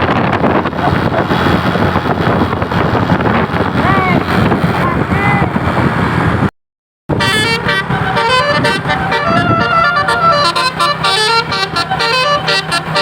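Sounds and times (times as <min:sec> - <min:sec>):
low engine hum: 0:00.0 - 0:06.5, 0:07.1 - 0:13.0
bus musical horn: 0:07.1 - 0:13.0.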